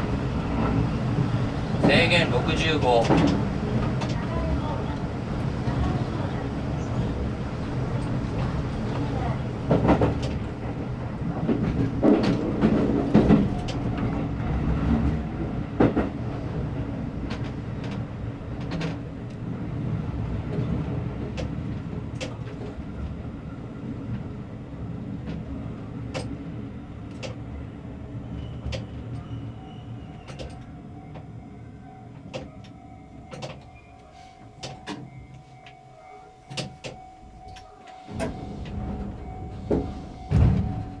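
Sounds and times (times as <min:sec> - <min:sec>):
electric train running on rails: 0:00.0 - 0:41.0.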